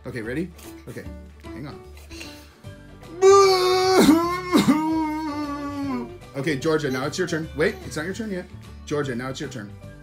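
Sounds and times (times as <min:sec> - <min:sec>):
person wailing pretend crying: 0:03.2 - 0:06.2.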